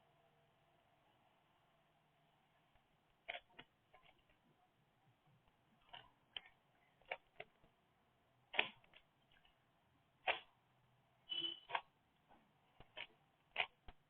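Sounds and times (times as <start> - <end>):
puzzle cube plastic clicks: 3.1 - 4.4, 8.5 - 9.6, 10.2 - 10.6, 11.6 - 12.0, 12.7 - 14.0.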